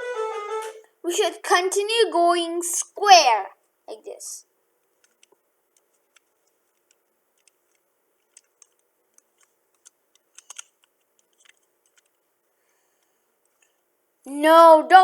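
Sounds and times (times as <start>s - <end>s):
plastic puzzle cube clicking: 5.0s - 12.2s.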